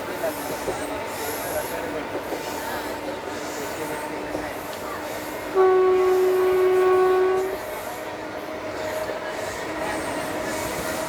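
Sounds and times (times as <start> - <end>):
train coaches rolling on track: 0.0 - 11.0
locomotive horn blast: 5.5 - 7.7.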